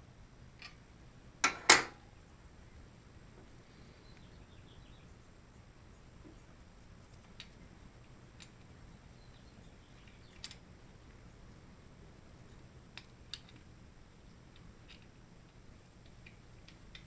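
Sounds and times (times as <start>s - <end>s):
low steady hum: 0.0s - 17.0s
metal parts clicking and tapping: 7.2s - 8.7s, 10.0s - 10.7s, 12.5s - 17.0s.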